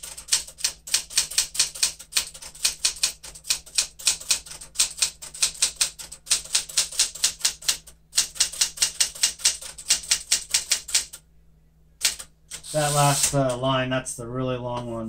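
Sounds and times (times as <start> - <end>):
typewriter keys striking: 0.0 - 11.2, 12.0 - 13.5.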